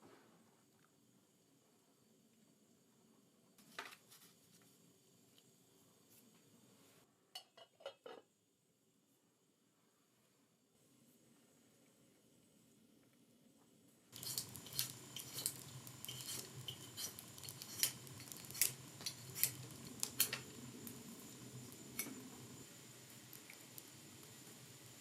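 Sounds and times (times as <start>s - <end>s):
metal utensils clinking: 14.2s - 20.4s.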